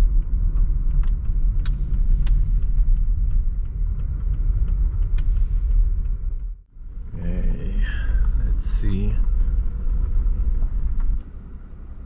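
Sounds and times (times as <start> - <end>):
sharp clicks and ticks: 0.0 - 6.6
car road rumble: 0.0 - 12.0.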